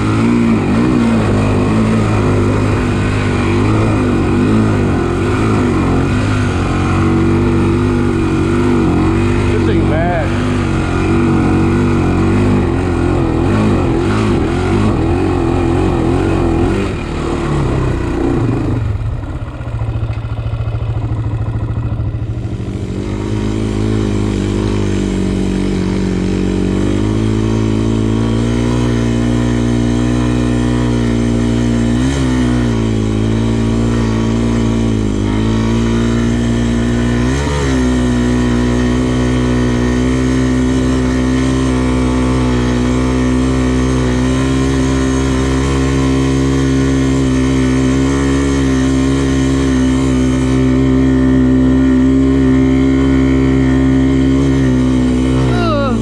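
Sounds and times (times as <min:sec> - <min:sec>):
quad engine revving: 0:00.0 - 0:56.0.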